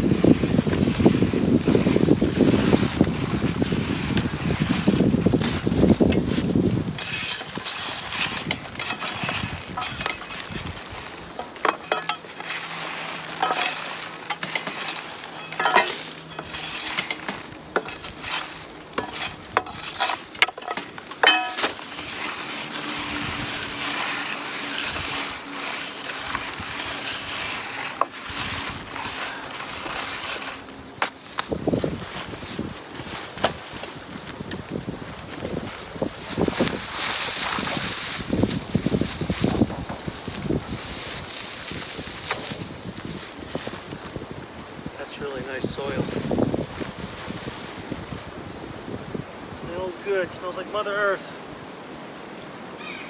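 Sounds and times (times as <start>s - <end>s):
shovel scraping soil: 0.1s - 44.0s, 45.2s - 48.2s
stones clinking: 11.3s - 22.1s.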